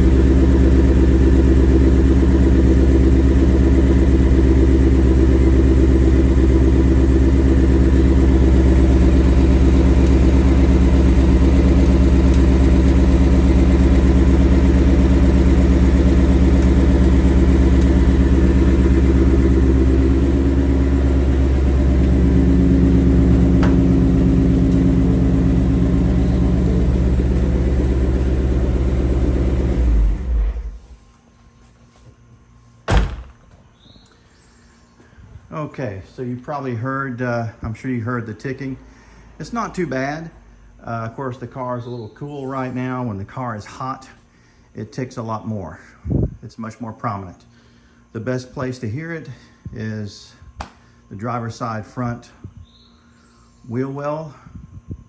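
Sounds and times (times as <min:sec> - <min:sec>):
light engine ticking: 0:00.0 - 0:29.2
car engine idling: 0:00.0 - 0:30.9.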